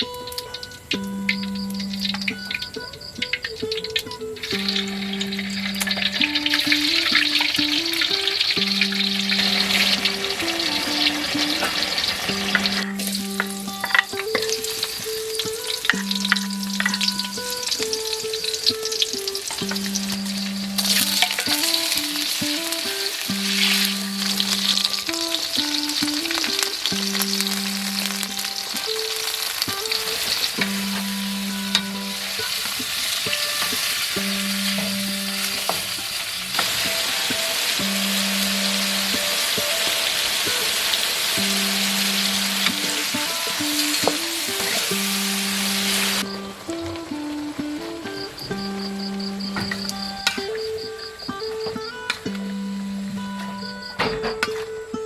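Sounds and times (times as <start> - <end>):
quiet background music: 0.0 - 55.0
food sizzling in hot oil: 0.2 - 51.4.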